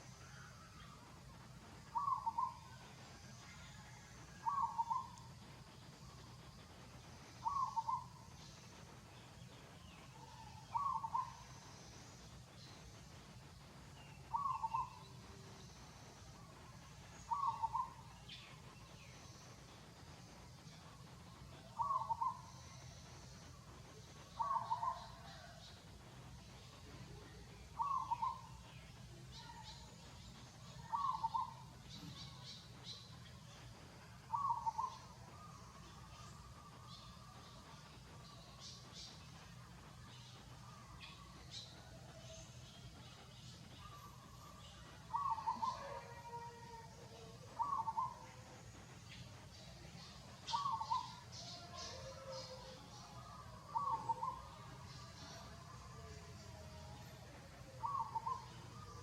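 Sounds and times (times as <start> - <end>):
bird calling: 1.9 - 2.7, 7.4 - 8.2, 10.2 - 11.5, 14.3 - 15.1, 17.2 - 18.0, 21.8 - 22.8, 24.4 - 25.6, 27.8 - 28.5, 30.8 - 31.6, 34.3 - 36.4, 43.8 - 46.5, 47.1 - 48.4, 50.5 - 52.8, 53.6 - 55.4, 57.8 - 59.0
faint high bird chirps: 26.5 - 33.5, 40.0 - 48.5.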